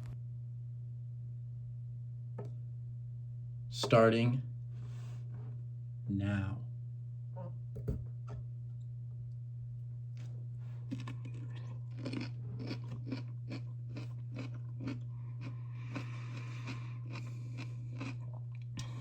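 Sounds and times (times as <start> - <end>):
steady low hum: 0.0 - 19.0
crunchy pickle chewing: 10.2 - 19.0.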